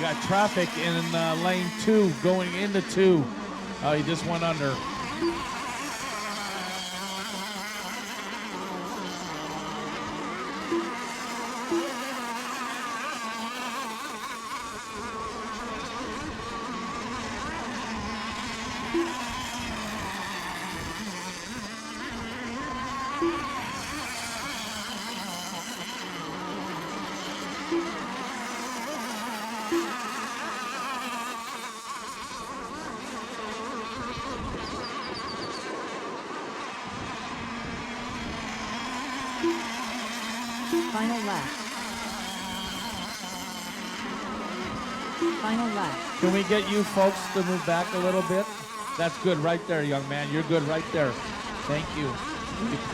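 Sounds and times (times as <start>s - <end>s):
model boat engines buzzing: 0.0s - 52.9s
short sharp beeps: 5.2s - 5.6s, 10.7s - 12.1s, 19.0s - 19.4s, 23.2s - 23.7s, 27.6s - 28.1s, 29.7s - 30.1s, 39.4s - 39.8s, 40.7s - 41.5s, 45.2s - 46.4s.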